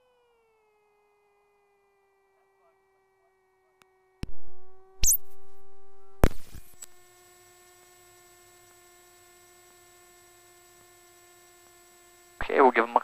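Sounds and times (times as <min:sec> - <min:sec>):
electrical hum: 0:04.2 - 0:13.0
thin high whine: 0:04.2 - 0:13.0.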